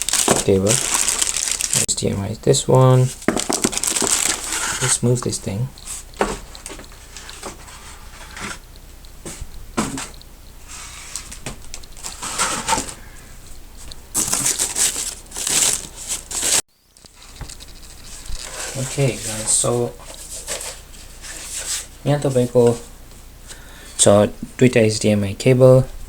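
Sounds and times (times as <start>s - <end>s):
packaging rustling and crinkling: 0.0s - 1.9s, 3.0s - 8.6s, 9.2s - 22.0s.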